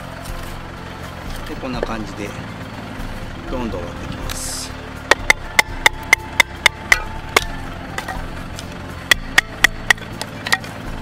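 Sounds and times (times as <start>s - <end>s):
knife struck splitting wood: 5.1s - 10.8s.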